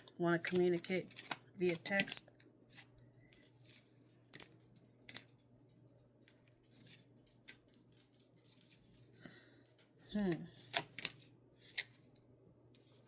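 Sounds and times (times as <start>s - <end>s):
cards clicking and tapping: 0.0s - 2.9s, 3.8s - 5.4s, 10.2s - 12.1s.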